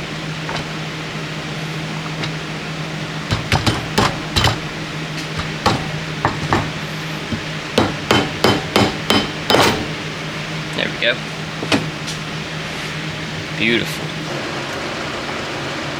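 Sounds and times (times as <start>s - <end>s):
hammer tapping metal: 3.3s - 10.0s.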